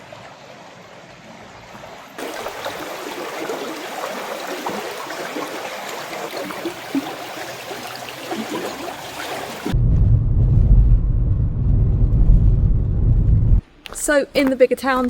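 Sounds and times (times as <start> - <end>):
small river babbling: 0.0 - 9.8.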